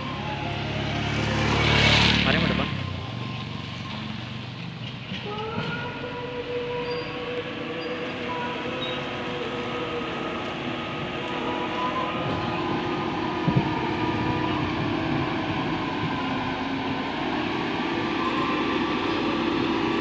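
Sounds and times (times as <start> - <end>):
diesel engine revving: 0.0 - 5.2, 7.2 - 20.0
whining tone: 5.2 - 20.0.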